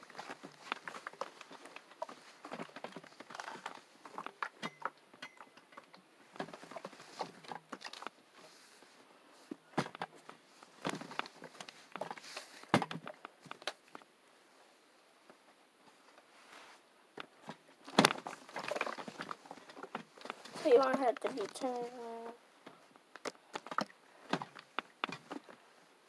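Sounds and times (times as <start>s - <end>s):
clothes rustling: 0.0s - 4.5s, 6.3s - 13.9s, 15.8s - 22.4s.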